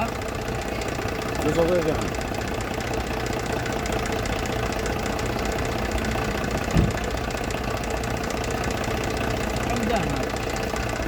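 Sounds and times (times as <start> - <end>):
car engine running: 0.0 - 11.0
rapid engine ticking: 0.0 - 11.0
low thump: 6.7 - 7.1.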